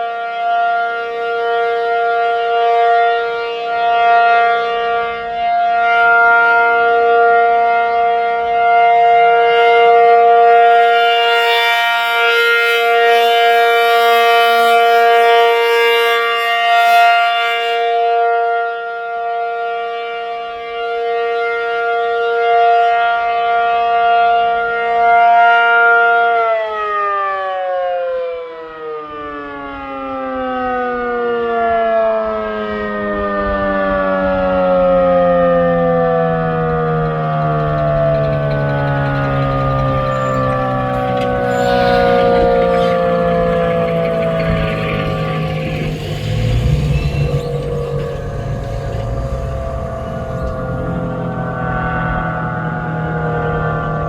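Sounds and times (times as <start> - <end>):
tornado siren two-note chord: 0.0 - 20.9, 32.7 - 54.0.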